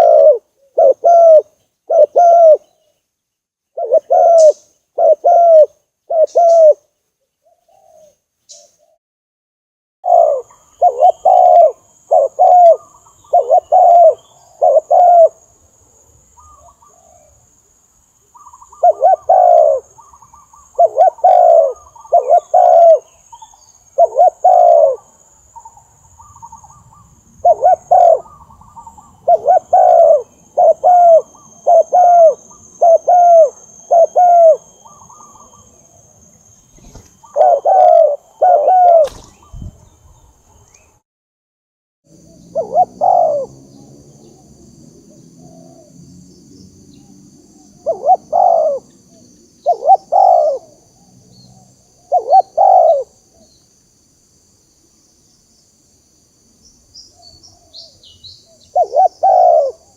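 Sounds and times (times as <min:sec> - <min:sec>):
dove cooing: 0:00.0 - 0:02.8, 0:03.8 - 0:08.2, 0:10.0 - 0:15.4, 0:18.4 - 0:25.2, 0:26.2 - 0:36.0, 0:36.7 - 0:39.8, 0:42.2 - 0:44.6, 0:45.3 - 0:46.0, 0:47.8 - 0:53.5, 0:57.2 - 0:59.9.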